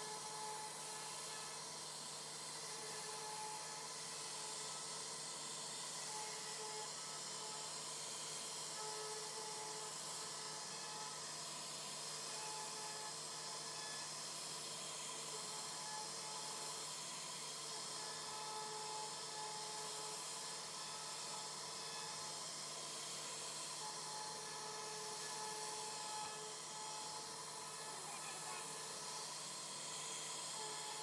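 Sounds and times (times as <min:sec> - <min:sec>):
router spindle whining: 0:00.0 - 0:31.0.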